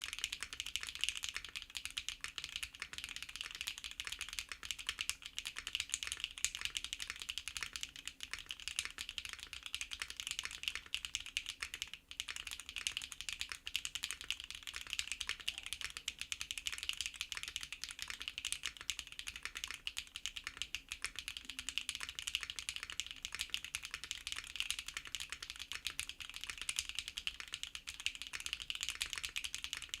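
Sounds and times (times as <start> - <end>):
fast typing on mechanical keyboard: 0.0 - 30.0.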